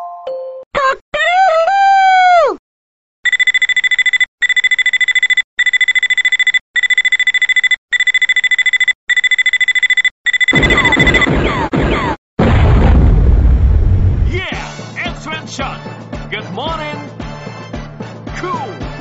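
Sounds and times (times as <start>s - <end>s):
alarm clock beeping: 3.3s - 11.3s.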